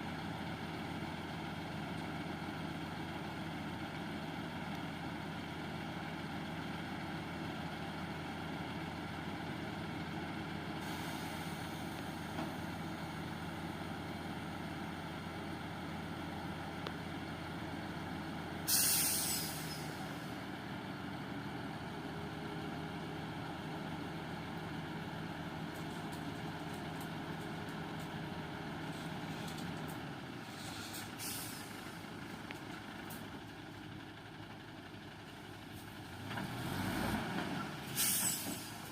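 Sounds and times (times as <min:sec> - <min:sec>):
truck diesel engine idling: 0:00.0 - 0:36.3
air-brake hiss: 0:10.8 - 0:12.0, 0:18.6 - 0:20.2, 0:30.4 - 0:32.0, 0:37.8 - 0:38.9.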